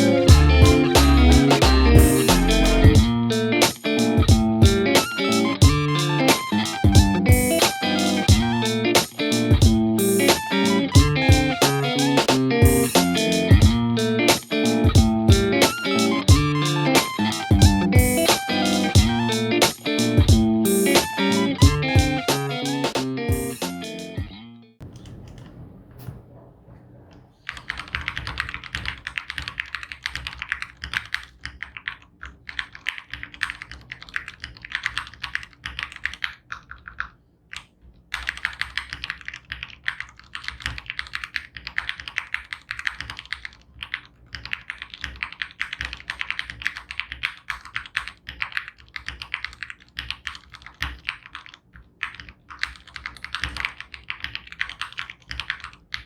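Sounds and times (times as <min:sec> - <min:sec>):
mechanical keyboard typing: 0:27.5 - 0:56.0.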